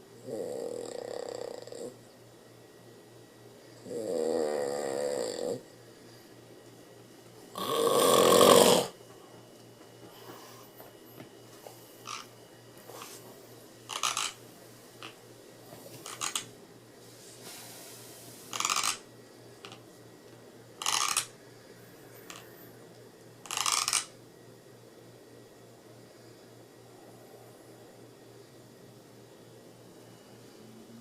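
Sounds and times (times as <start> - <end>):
teeth grinding: 13.9 - 14.4, 18.5 - 19.0, 20.8 - 21.3, 23.5 - 24.1.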